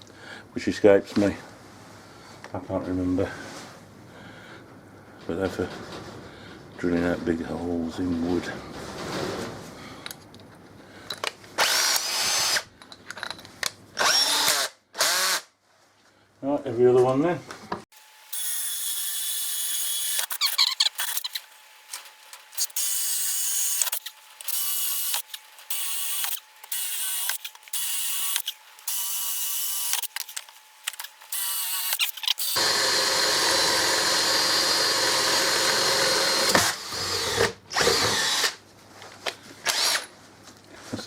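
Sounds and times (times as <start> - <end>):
electric drill boring wood: 11.6 - 12.6, 14.0 - 15.4, 18.0 - 38.6, 39.7 - 40.1.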